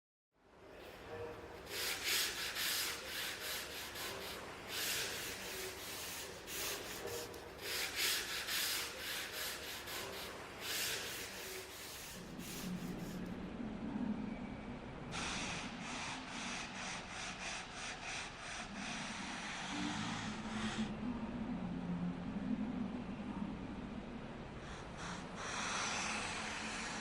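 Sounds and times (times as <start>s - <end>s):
sandpaper rubbing on wood: 1.6s - 13.3s
low hum: 11.4s - 15.2s, 19.7s - 25.0s.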